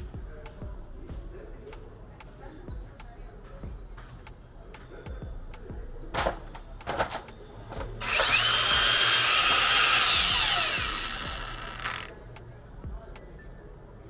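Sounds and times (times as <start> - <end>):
high-pitched power tool spinning: 7.9 - 12.1.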